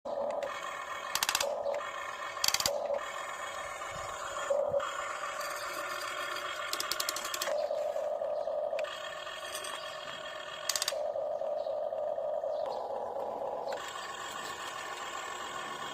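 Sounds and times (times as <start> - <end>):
electric motor whine: 0.1 - 15.9
short rattling bursts: 0.4 - 7.6.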